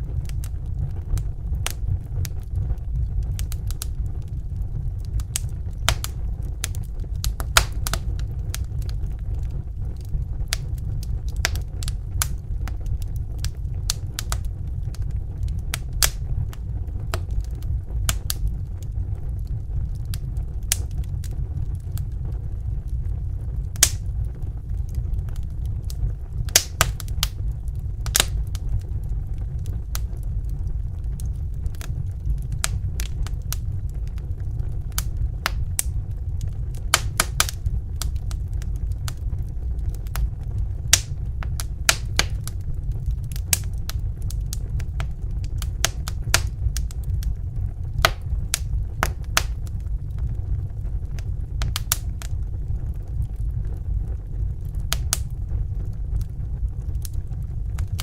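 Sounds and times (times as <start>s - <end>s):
low rumble: 0.0s - 58.0s
wood fire crackling: 0.0s - 58.0s.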